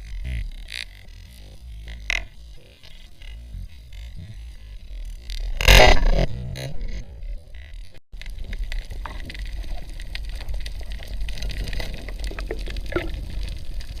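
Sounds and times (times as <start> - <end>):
small clicks and crackles: 0.0 - 14.0
underwater low rumble: 0.0 - 14.0
water gurgle: 8.2 - 14.0.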